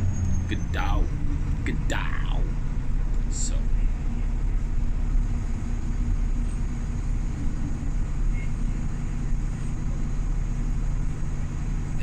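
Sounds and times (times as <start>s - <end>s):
faint steady hum: 0.0s - 12.0s
vehicle engine rumble: 0.0s - 12.0s.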